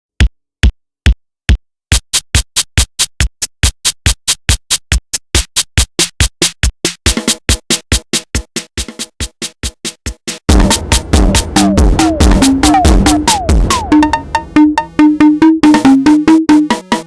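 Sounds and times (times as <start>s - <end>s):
drum machine hits: 0.6s - 17.0s
sustained synthesizer chord: 10.5s - 16.0s.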